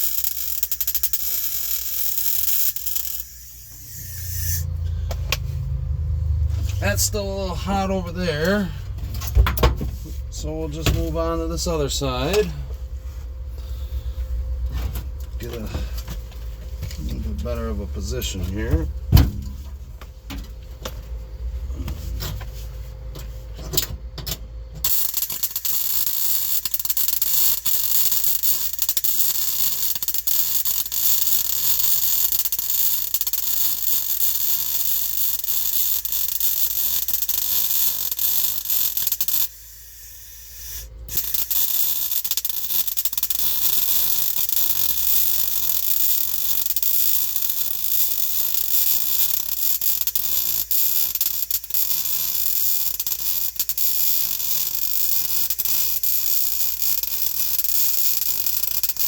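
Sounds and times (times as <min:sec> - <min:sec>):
welding arc crackling: 0:00.0 - 0:05.7, 0:06.3 - 0:08.9, 0:10.0 - 0:12.6, 0:24.9 - 0:59.0.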